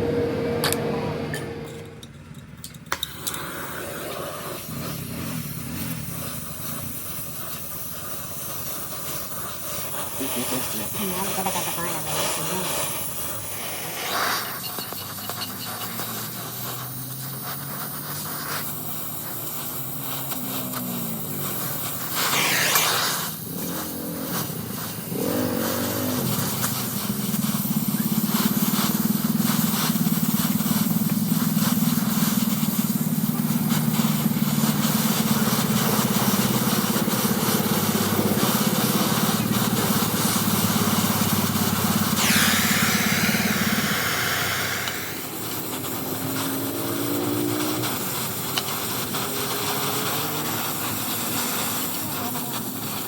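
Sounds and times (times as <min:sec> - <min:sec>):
loud hiss: 0:02.9 - 0:53.0
workshop machine motor humming: 0:42.2 - 0:46.5.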